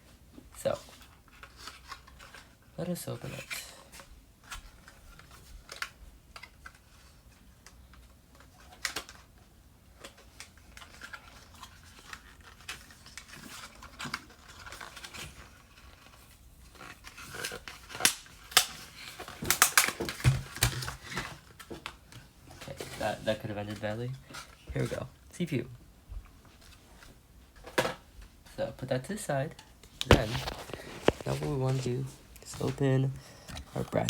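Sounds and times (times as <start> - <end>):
clicks and taps of packaging: 16.8 - 22.3, 29.8 - 31.5.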